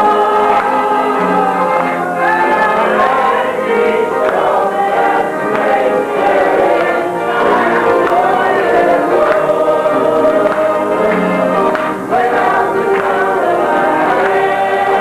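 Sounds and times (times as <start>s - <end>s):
choir singing sustained notes: 0.0s - 15.0s.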